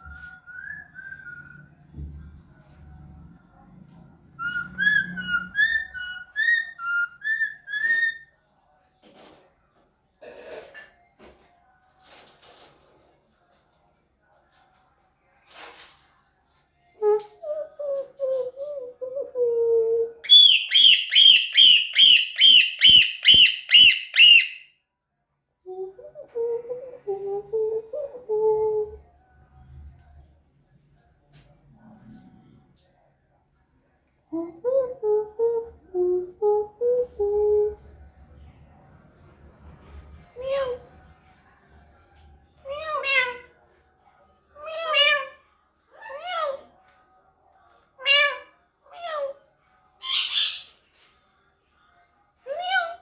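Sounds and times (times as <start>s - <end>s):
parrot whistling: 4.4s - 8.3s, 20.2s - 24.6s
parrot voice-like notes: 25.7s - 29.0s, 34.3s - 37.9s.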